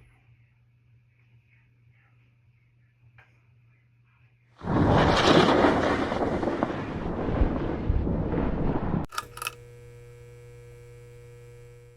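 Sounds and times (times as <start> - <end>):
amplifier mains hum: 9.1 - 11.9
clicks: 9.1 - 11.9.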